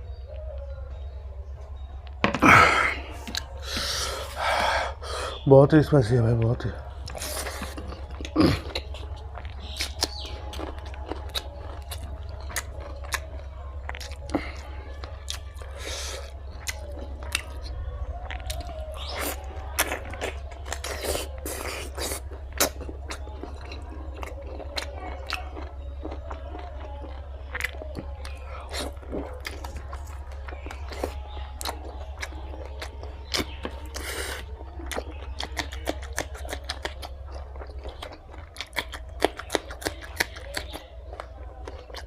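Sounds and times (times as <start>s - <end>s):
food crunching: 1.7s - 5.4s, 6.2s - 42.0s
chewing and biting food: 2.0s - 5.4s, 6.4s - 42.0s
wet mouth clicks: 33.3s - 41.3s.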